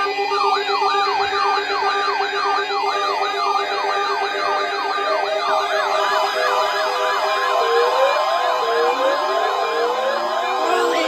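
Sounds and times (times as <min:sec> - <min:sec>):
rising whooping siren alarm: 0:00.0 - 0:11.0
electronic beeps: 0:10.6 - 0:11.0.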